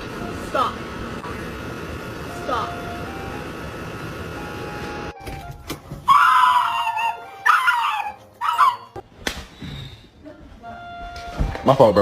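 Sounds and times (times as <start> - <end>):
dog yelping: 6.1 - 9.0.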